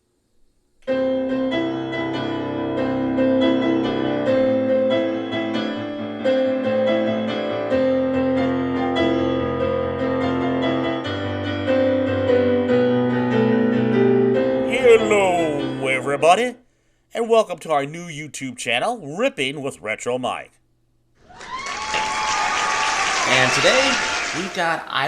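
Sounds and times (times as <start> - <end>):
piano intro music: 0.8 - 16.6.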